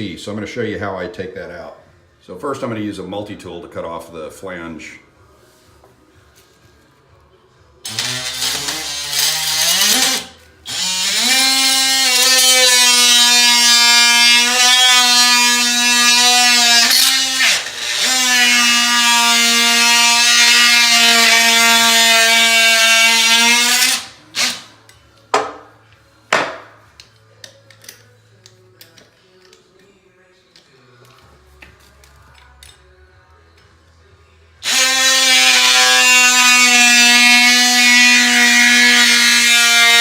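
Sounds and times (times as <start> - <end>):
oscillating multi-tool cutting plastic: 7.9 - 24.6, 34.6 - 40.0.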